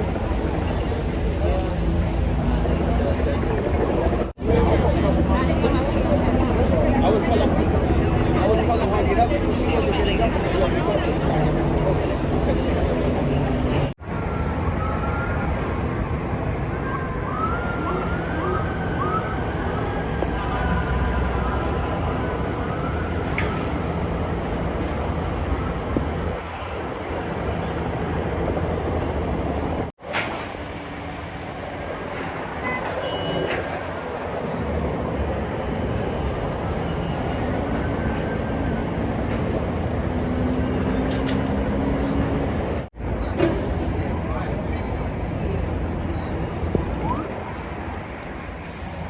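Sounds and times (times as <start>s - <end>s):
low rumble of engines: 0.0s - 49.0s
street noise: 0.0s - 49.0s
emergency vehicle siren whooping: 8.3s - 28.1s.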